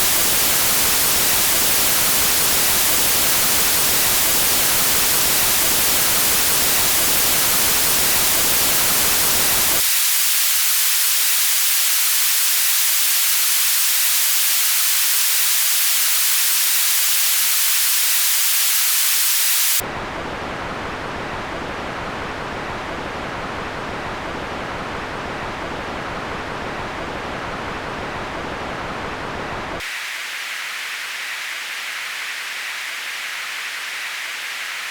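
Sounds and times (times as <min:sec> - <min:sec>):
synthetic white noise hiss: 0:00.0 - 0:34.9.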